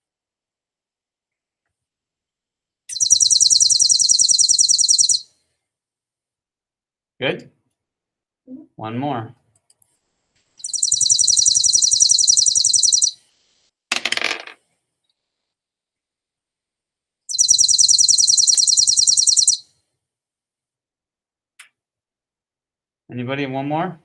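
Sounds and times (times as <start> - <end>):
sparrow song dry rapid trill: 2.9 - 5.3, 10.6 - 13.4, 17.3 - 19.6.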